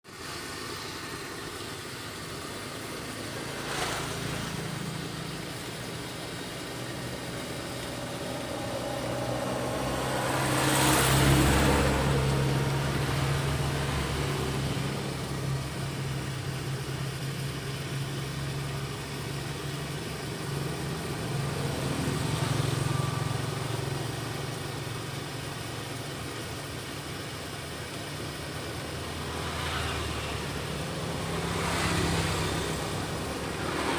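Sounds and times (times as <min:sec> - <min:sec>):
vehicle engine humming: 0:00.0 - 0:33.9.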